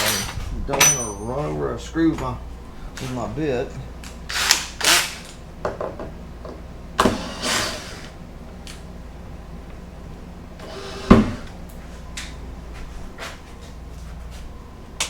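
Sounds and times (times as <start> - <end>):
cordless drill bursts: 4.3 - 5.3.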